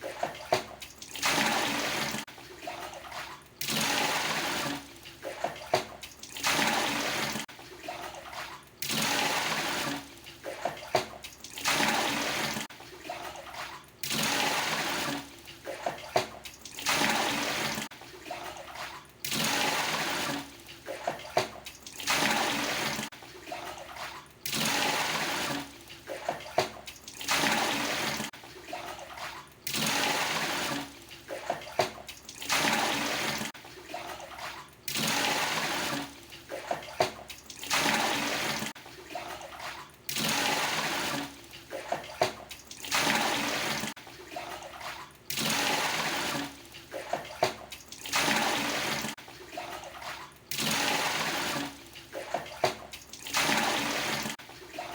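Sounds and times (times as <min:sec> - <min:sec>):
water pouring from a dipper: 0:00.0 - 0:54.9
water sloshing in a tub: 0:00.0 - 0:54.9.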